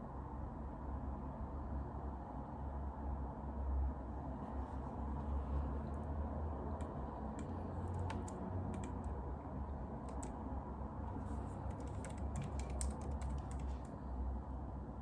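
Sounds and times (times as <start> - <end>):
low room hum: 0.0 - 15.0
keyboard typing: 6.7 - 10.5, 11.1 - 14.0.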